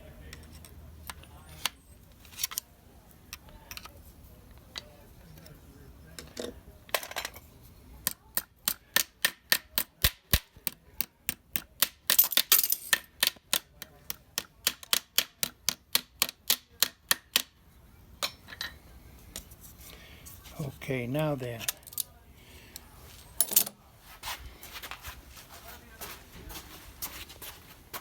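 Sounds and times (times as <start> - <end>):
small hammer tapping rivets: 8.0 - 17.6.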